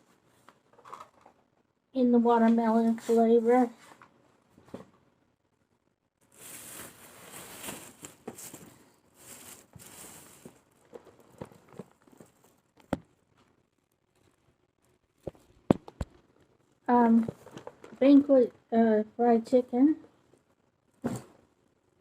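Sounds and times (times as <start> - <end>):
plastic bag rustling: 6.2 - 12.9
items being set down: 6.4 - 13.1, 21.0 - 21.4.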